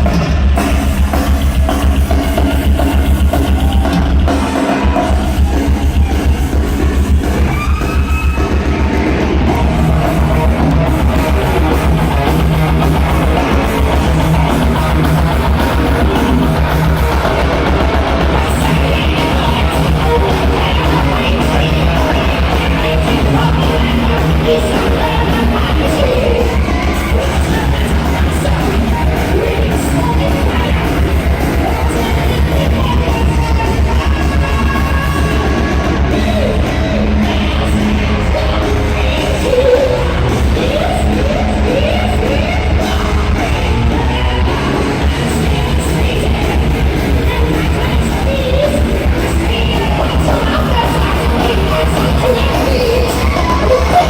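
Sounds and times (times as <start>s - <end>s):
distorted electric guitars: 0.0s - 54.0s
pounding drum beat: 0.0s - 54.0s
person singing and yelling: 0.8s - 54.0s.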